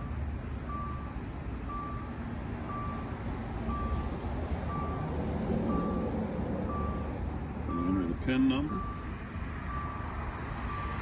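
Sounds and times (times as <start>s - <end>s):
car warning chime beeping: 0.0s - 11.0s.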